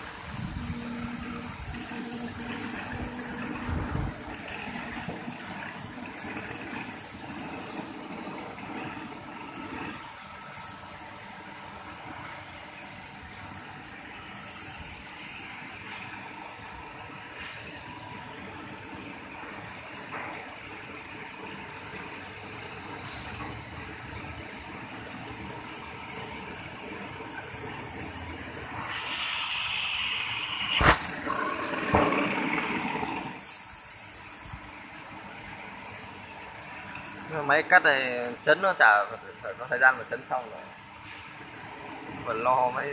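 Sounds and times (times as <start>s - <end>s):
high hiss of air jet: 0.0s - 7.3s, 26.3s - 32.2s, 33.4s - 35.0s
machine running noise: 0.0s - 42.9s.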